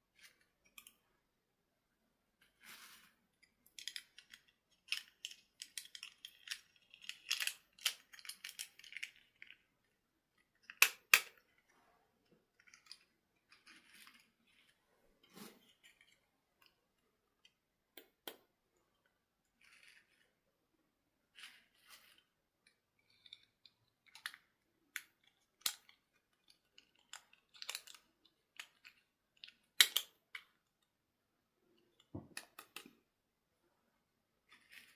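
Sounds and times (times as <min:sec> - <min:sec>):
plastic items crinkling and clicking: 0:03.4 - 0:09.6, 0:21.4 - 0:30.7.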